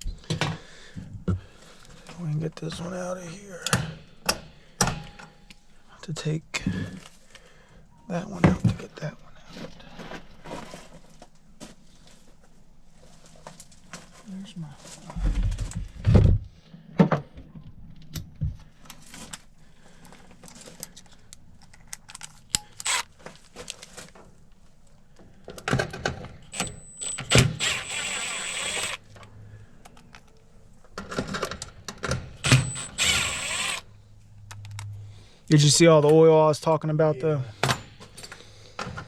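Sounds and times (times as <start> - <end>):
steady whirr: 26.5 - 29.3, 32.4 - 35.1.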